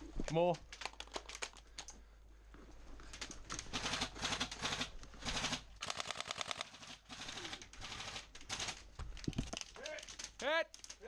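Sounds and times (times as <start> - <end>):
airsoft rifles firing bursts: 3.6 - 8.8.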